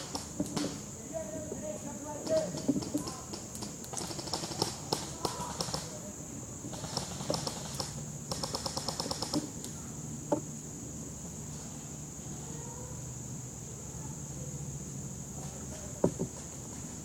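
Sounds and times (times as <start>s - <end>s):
airsoft guns firing in bursts: 3.1s - 5.9s, 6.7s - 9.5s.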